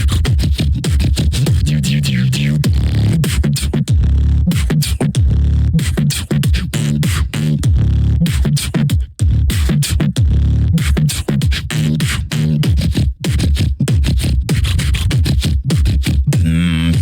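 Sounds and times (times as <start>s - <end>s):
driving drum beat: 0.0s - 1.7s, 12.6s - 17.0s
sliding bass line: 0.0s - 17.0s.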